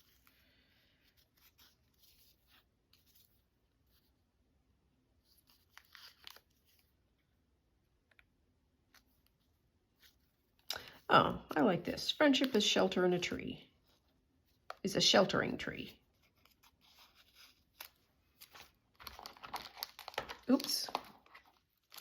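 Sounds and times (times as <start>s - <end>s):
paper rustling: 1.0s - 4.2s, 5.2s - 7.1s, 13.8s - 22.0s.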